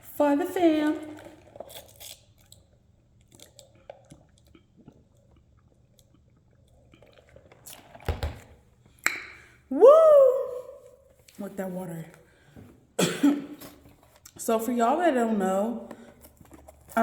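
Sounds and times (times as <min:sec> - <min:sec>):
person drinking water: 0:01.1 - 0:08.1
swallowing sounds: 0:02.5 - 0:08.0.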